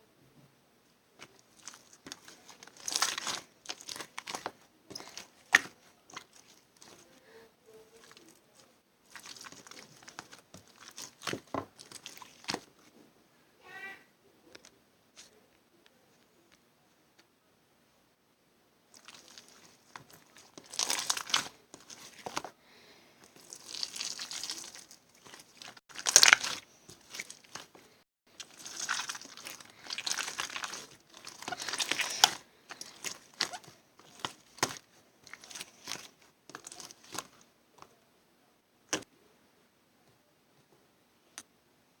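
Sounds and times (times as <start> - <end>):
crinkling and rustling material: 1.1 - 13.0, 18.9 - 22.6, 23.2 - 38.0.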